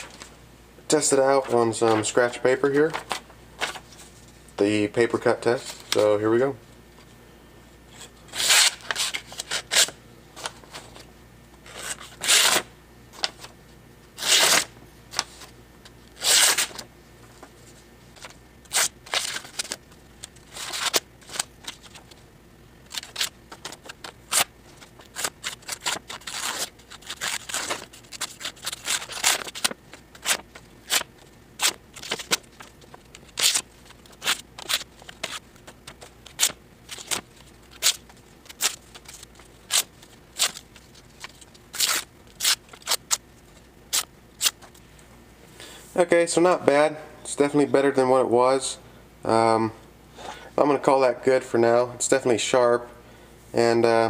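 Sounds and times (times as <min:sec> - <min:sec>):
paper crackling: 0:16.1 - 0:22.2, 0:22.8 - 0:44.8
knife slicing paper: 0:16.2 - 0:16.8, 0:22.9 - 0:35.4.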